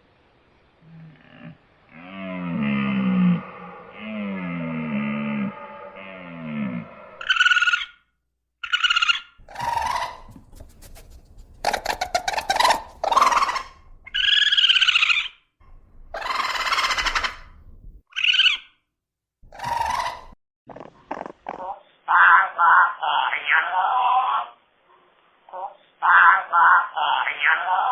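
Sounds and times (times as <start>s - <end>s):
low gliding whale moan: 0.8s - 7.3s.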